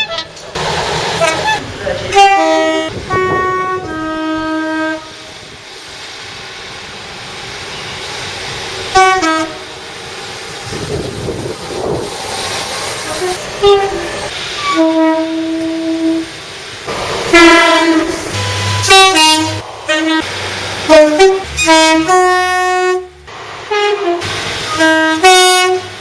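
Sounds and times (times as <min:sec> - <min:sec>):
running train: 0:00.0 - 0:26.0
train two-tone horn: 0:01.2 - 0:05.3, 0:08.9 - 0:09.8, 0:13.1 - 0:16.3, 0:17.3 - 0:26.0.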